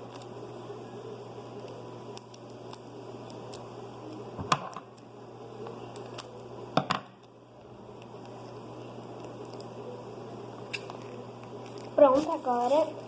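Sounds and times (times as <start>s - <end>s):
paper and plastic crinkling: 10.9s - 13.0s.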